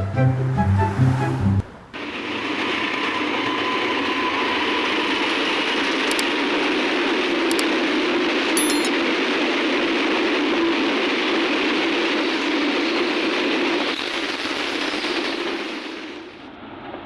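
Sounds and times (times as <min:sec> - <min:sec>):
steady rushing rumbling noise: 0:04.6 - 0:17.0.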